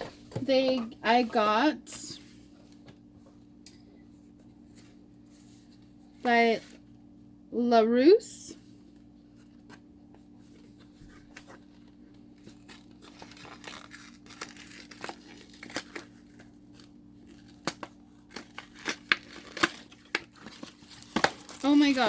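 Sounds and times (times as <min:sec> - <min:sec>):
packaging tearing and crinkling: 0:12.4 - 0:22.0.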